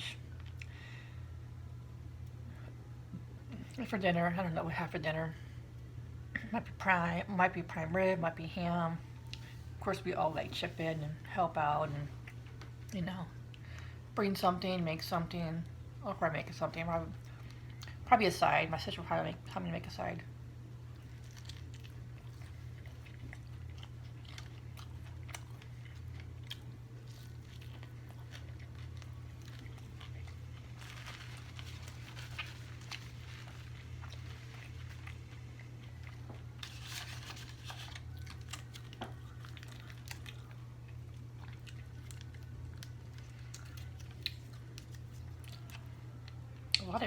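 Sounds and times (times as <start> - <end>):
steady low hum: 0.0 - 47.0
crunchy chewing: 20.8 - 46.8
person chewing food: 20.9 - 46.8.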